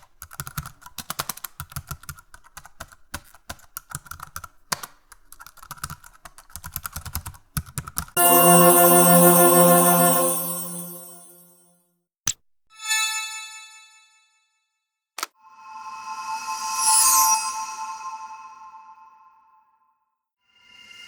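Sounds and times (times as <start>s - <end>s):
keyboard typing: 0.0s - 11.1s
loud sustained musical chord: 8.2s - 11.5s.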